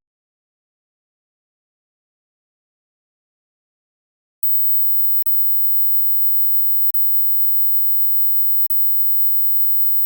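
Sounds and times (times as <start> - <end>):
high-pitched test tone: 4.4 - 10.0.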